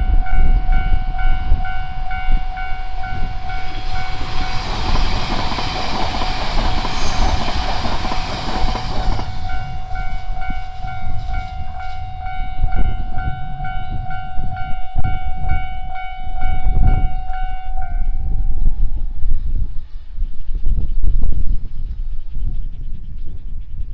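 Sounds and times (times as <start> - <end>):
crossing warning bell ringing: 0.0 - 19.2
train rushing past: 0.5 - 18.4.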